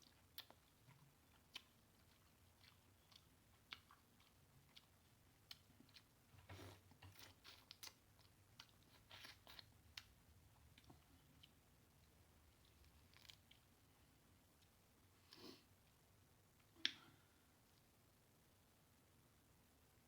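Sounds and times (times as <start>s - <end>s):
chewing: 0.0s - 13.8s.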